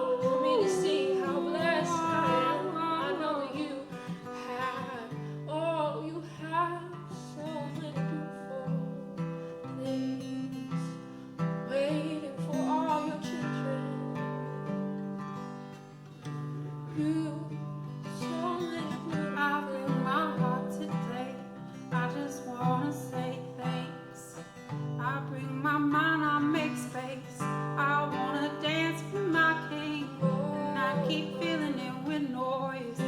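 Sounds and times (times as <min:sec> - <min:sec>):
person singing wordlessly: 0:00.0 - 0:09.0, 0:25.0 - 0:33.0
acoustic guitar playing: 0:00.0 - 0:33.0.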